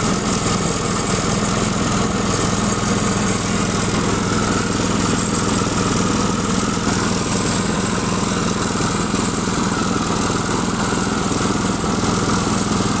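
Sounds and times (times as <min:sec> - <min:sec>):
wood chipper engine running: 0:00.0 - 0:13.0.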